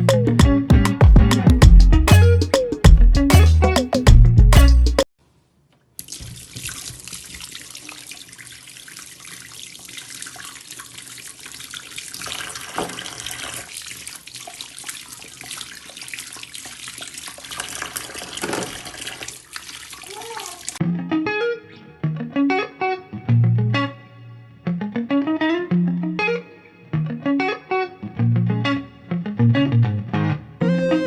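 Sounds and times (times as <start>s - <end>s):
tap water running into sink: 6.0s - 20.8s
small knocks and clatters: 18.2s - 19.0s.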